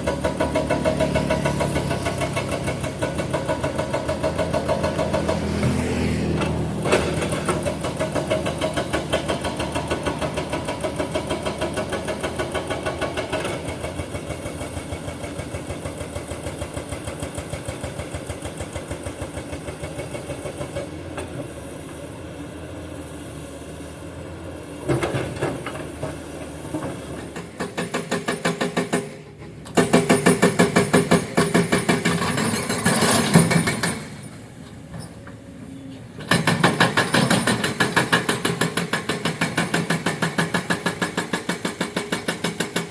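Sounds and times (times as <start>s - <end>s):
hydraulic breaker hammering rock: 6.8s - 21.4s, 24.8s - 34.4s, 36.2s - 42.9s.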